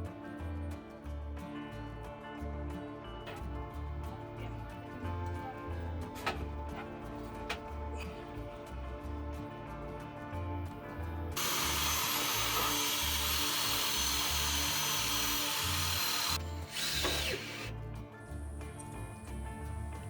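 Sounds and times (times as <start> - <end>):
power tool running: 11.4 - 17.7.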